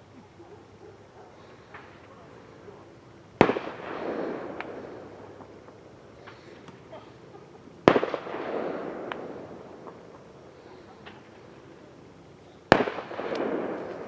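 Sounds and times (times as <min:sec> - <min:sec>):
firework bang with echo: 0:03.4 - 0:06.4, 0:07.8 - 0:10.2, 0:12.7 - 0:14.0
faint firework pops: 0:03.4 - 0:06.8, 0:07.8 - 0:10.3, 0:12.7 - 0:14.0.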